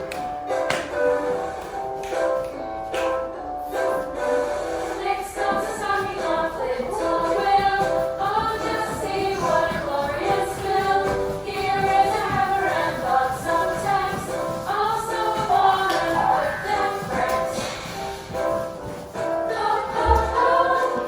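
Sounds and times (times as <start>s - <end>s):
backing music: 0.0s - 21.0s
children singing: 5.0s - 21.0s.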